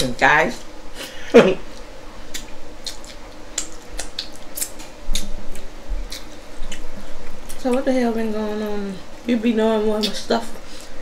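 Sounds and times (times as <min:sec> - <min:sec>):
wet chewing smacks: 0:01.7 - 0:07.8.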